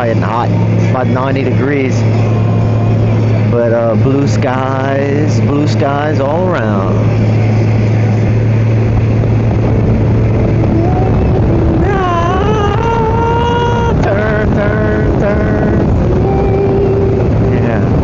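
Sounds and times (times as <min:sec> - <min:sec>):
motorcycle engine low hum: 0:00.0 - 0:18.0
wind and road noise: 0:00.0 - 0:18.0
sliding pitched notes: 0:07.8 - 0:18.0.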